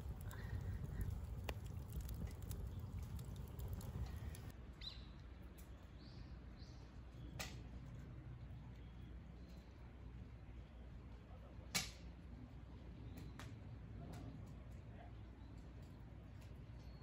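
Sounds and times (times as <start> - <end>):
steady low rumble: 0.0 - 4.6.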